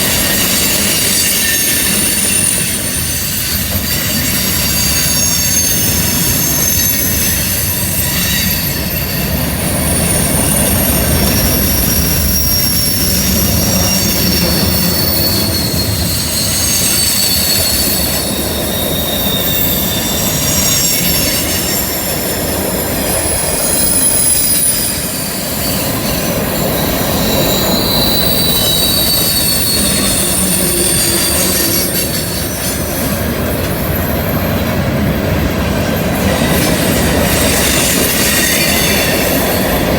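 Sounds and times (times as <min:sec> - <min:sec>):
train rumble: 0:00.0 - 0:39.9
train wheels squealing: 0:00.0 - 0:39.9.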